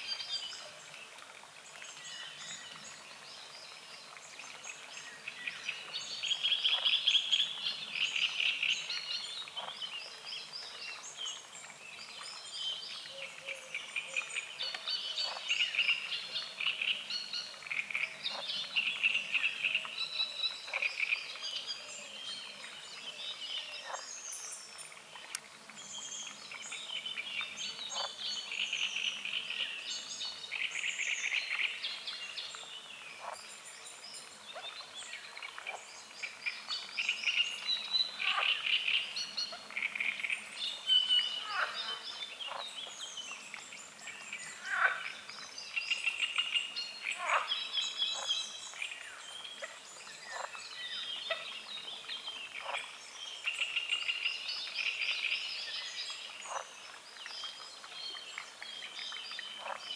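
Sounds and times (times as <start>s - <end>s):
birds singing and chirping: 1.8s - 59.9s
frogs croaking: 41.4s - 42.7s, 44.4s - 45.3s, 47.0s - 48.3s.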